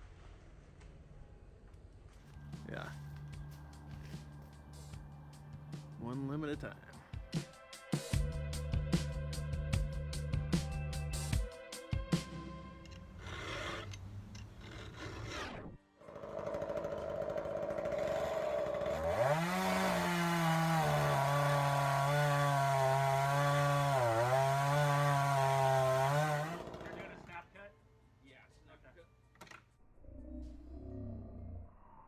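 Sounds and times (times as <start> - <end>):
chainsaw revving: 2.4 - 7.0, 14.6 - 27.4.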